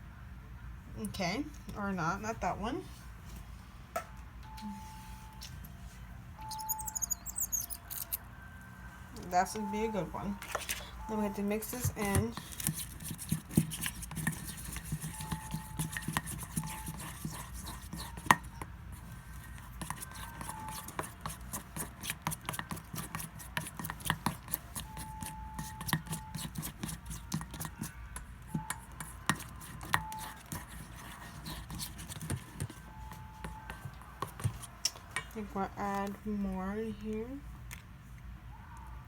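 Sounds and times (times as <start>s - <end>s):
utensil scraping: 29.0s - 32.8s.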